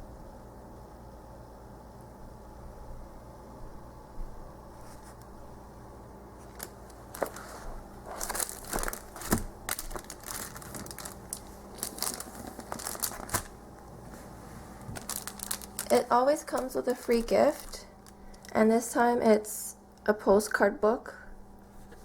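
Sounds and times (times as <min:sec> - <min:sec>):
paper and packaging crinkling: 0:06.4 - 0:18.6.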